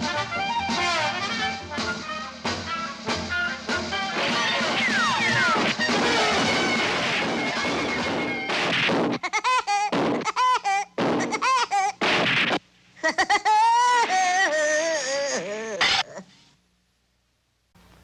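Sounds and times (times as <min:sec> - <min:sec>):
orchestral music: 0:00.0 - 0:08.5
loud crashes: 0:04.2 - 0:09.2.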